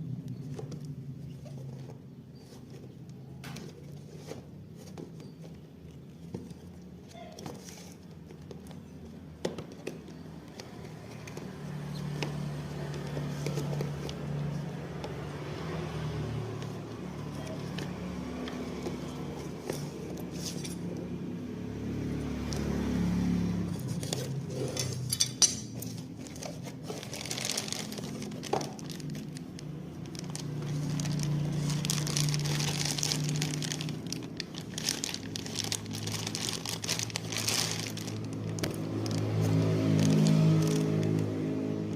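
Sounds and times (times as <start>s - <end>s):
plastic packaging crinkling: 26.0s - 41.5s.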